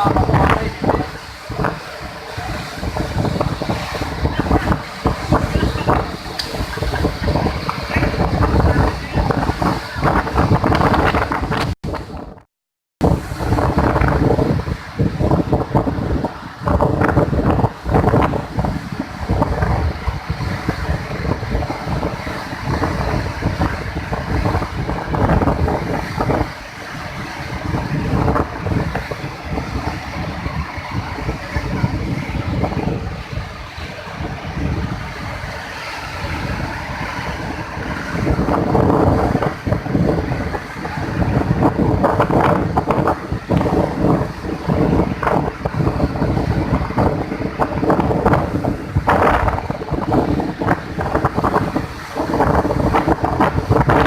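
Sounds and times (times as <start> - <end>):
rushing floodwater: 0.0 - 54.0
wind buffeting microphone: 0.0 - 54.0.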